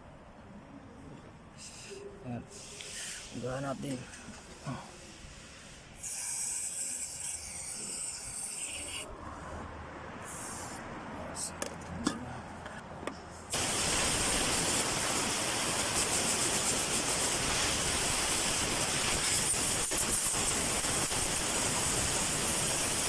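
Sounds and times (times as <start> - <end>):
aerosol spray hissing: 10.3 - 10.8, 13.5 - 23.0.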